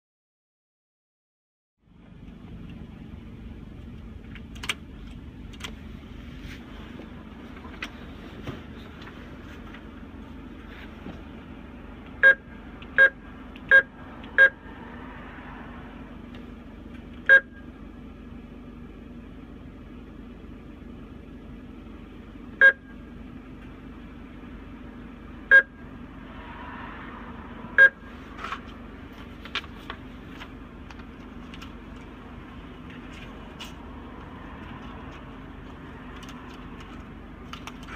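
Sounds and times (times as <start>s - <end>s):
car idling: 1.8s - 37.9s
keypad beeping: 12.2s - 12.4s.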